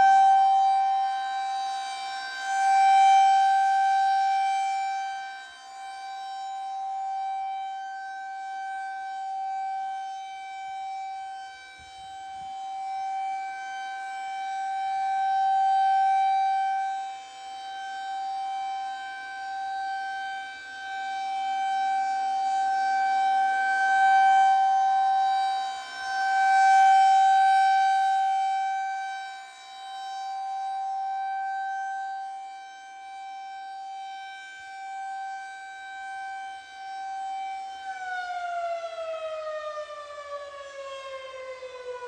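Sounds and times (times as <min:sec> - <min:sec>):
rotating siren steady tone: 0:00.0 - 0:42.0.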